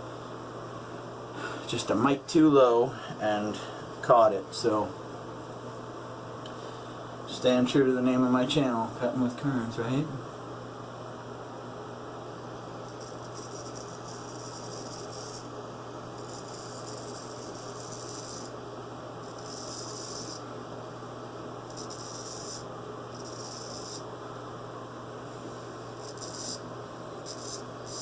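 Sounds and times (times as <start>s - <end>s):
razor scraping stubble: 12.9s - 15.5s, 16.2s - 18.6s, 19.2s - 20.4s, 21.7s - 24.1s, 26.0s - 26.6s, 27.2s - 28.0s.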